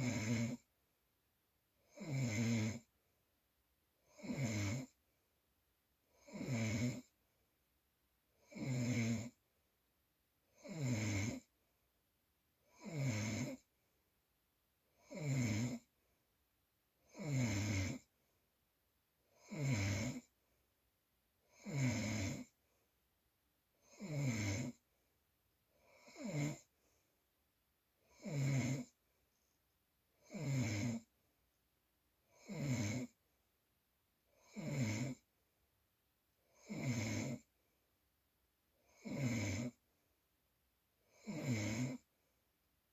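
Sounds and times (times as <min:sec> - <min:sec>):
loud snoring: 0:00.0 - 0:00.7, 0:01.9 - 0:02.9, 0:04.1 - 0:05.0, 0:06.2 - 0:07.1, 0:08.4 - 0:09.4, 0:10.6 - 0:11.5, 0:12.7 - 0:13.7, 0:15.0 - 0:15.9, 0:17.1 - 0:18.1, 0:19.4 - 0:20.3, 0:21.5 - 0:22.6, 0:23.8 - 0:24.8, 0:25.9 - 0:26.7, 0:28.1 - 0:29.0, 0:30.2 - 0:31.1, 0:32.3 - 0:33.2, 0:34.4 - 0:35.3, 0:36.6 - 0:37.5, 0:38.9 - 0:39.8, 0:41.1 - 0:42.1.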